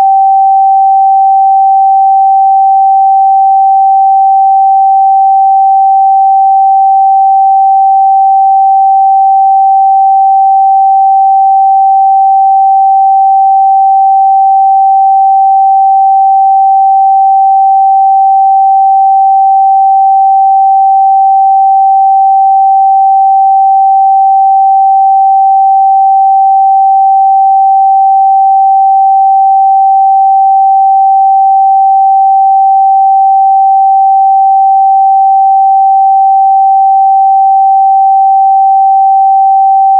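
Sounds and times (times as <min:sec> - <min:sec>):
sine-wave test tone: 0:00.0 - 0:39.9.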